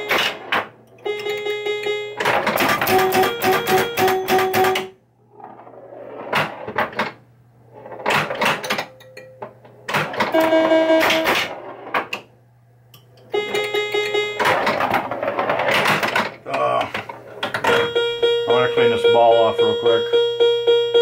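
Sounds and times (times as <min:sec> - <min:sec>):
pinball flipper and bumper hits: 0:00.0 - 0:07.2, 0:07.8 - 0:12.3, 0:13.2 - 0:18.4
stepped pitched electronic tones: 0:17.6 - 0:21.0.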